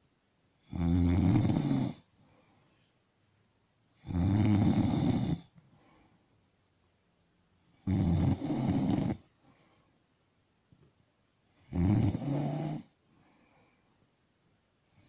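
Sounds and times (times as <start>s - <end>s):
person snoring: 0.6s - 2.0s, 4.0s - 5.5s, 7.8s - 9.2s, 11.6s - 13.0s
faint breathing: 2.0s - 3.1s, 5.4s - 6.5s, 9.2s - 10.2s, 12.3s - 14.2s.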